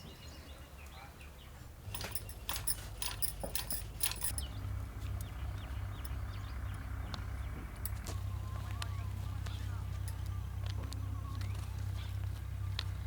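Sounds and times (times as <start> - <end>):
steady low hum: 0.3 - 13.0
metallic jingling and clinking: 1.8 - 4.5, 9.9 - 10.4.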